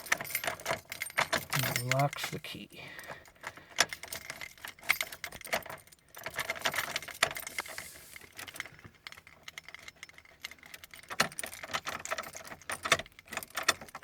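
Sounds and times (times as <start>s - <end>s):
keys jangling on a keyring: 0.0s - 14.0s.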